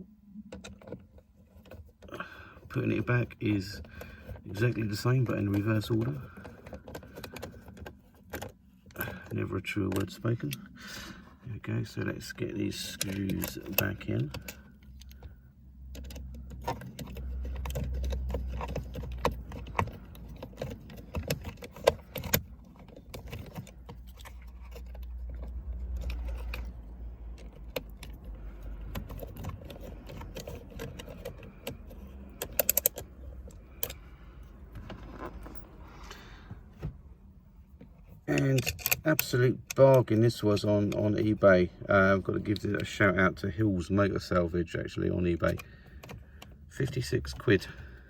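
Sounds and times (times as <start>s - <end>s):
low rumbling handling noise: 0.0s - 48.0s
screwdriver and screws clicking: 28.9s - 33.0s.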